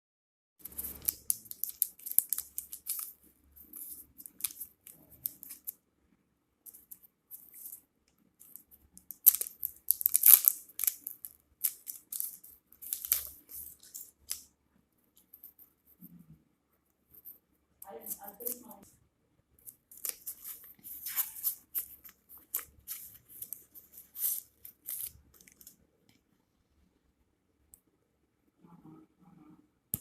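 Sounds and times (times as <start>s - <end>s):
wrapper crinkling and tearing: 0.6s - 3.2s, 8.5s - 14.4s, 19.9s - 25.8s.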